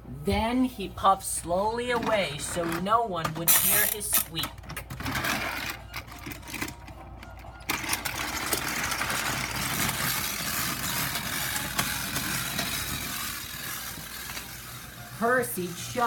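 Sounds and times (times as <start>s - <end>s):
small motor and gears whirring: 8.0s - 16.0s.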